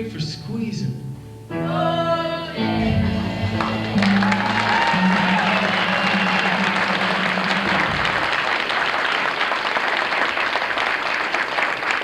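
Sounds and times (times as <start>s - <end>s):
audience applauding: 3.5s - 12.0s.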